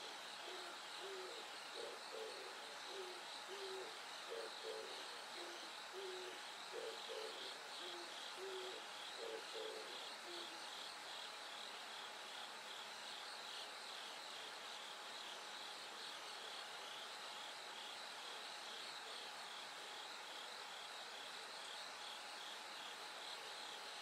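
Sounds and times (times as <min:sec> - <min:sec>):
bird hooting call: 0:00.4 - 0:10.6.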